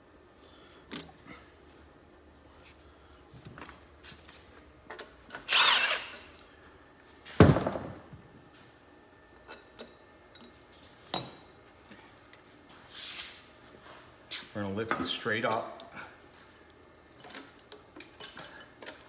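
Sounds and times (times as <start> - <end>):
tools and metal parts clinking: 0.9 - 1.4, 4.9 - 6.2, 7.4 - 8.0, 14.8 - 19.0
loud metallic clunk: 7.4 - 8.1.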